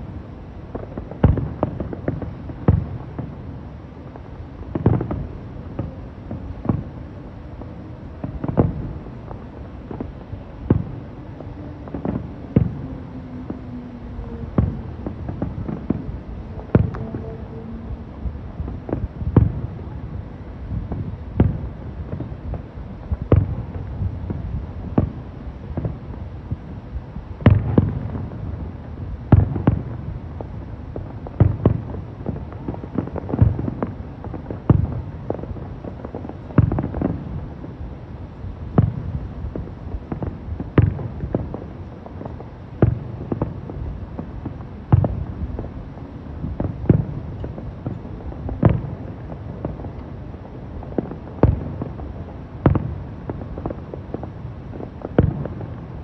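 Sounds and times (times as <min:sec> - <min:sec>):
fireworks bangs: 0:00.0 - 0:56.0
steady low rumble: 0:00.0 - 0:56.0.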